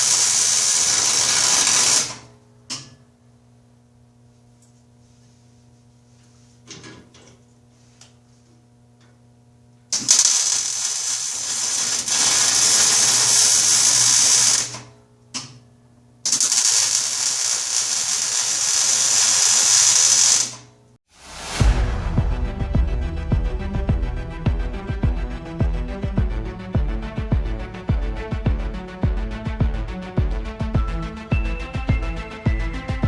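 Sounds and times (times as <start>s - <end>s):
angle grinder grinding metal: 0.0s - 2.2s, 10.0s - 14.7s
grinder disc spinning down: 10.1s - 14.7s.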